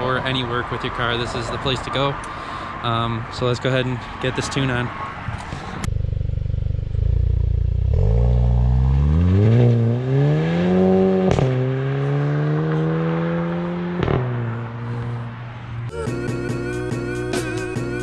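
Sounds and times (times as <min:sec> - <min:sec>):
car engine revving: 0:05.7 - 0:18.0.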